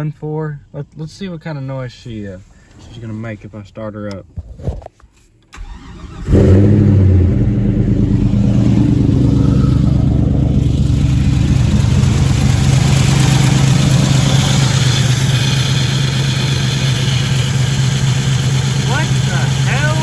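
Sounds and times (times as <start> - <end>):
car engine starting and idling: 5.4 - 20.0
engine lifter noise: 5.6 - 20.0.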